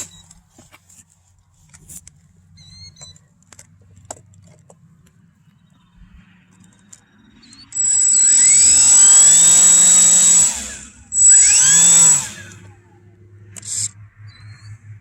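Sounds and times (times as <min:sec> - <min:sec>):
electric model airplane motor whining: 0:07.6 - 0:13.0, 0:13.6 - 0:13.9.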